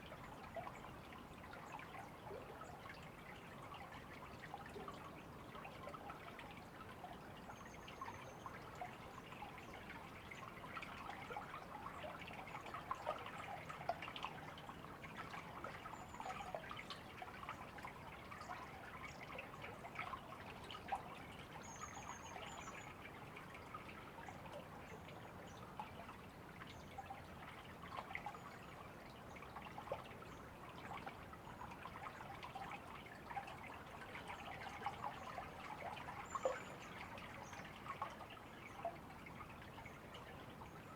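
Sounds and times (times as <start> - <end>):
river water babbling: 8.8 - 40.9.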